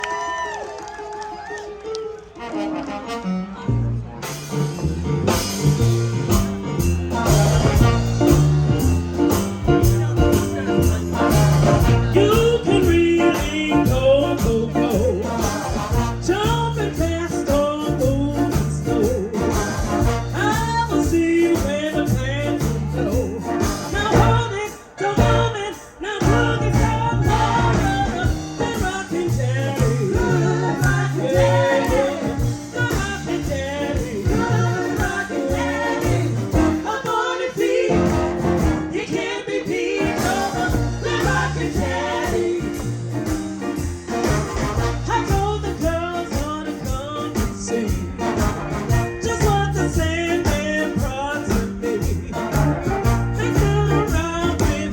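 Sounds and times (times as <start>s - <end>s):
live blues band playing: 1.7s - 54.9s
bass line: 3.4s - 37.0s, 37.8s - 54.9s
person singing: 10.2s - 19.8s, 49.2s - 54.9s.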